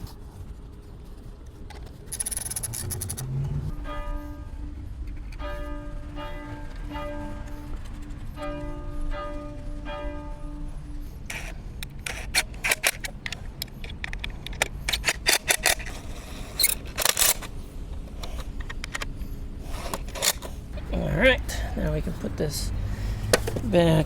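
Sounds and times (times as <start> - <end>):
metal parts scraping: 1.7 - 3.4, 11.3 - 20.7
plucked background music: 3.3 - 12.2
sharp clicks of hand tools: 11.3 - 17.5.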